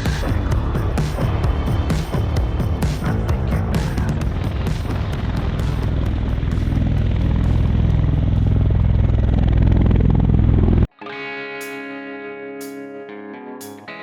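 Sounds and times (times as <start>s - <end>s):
deep engine drone: 0.0s - 10.9s
tiltrotor aircraft rotors beating: 0.0s - 10.9s.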